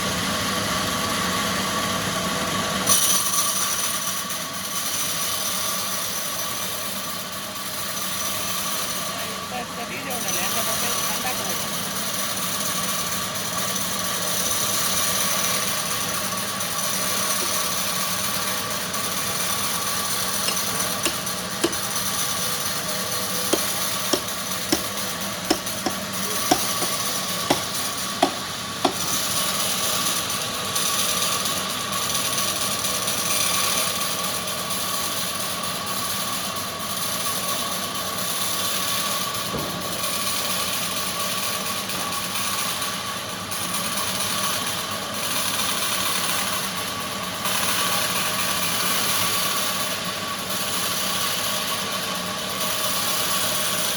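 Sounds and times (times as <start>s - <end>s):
sawmill machinery whining: 0.0s - 35.2s
sharp knocks: 20.4s - 22.0s, 23.5s - 29.3s.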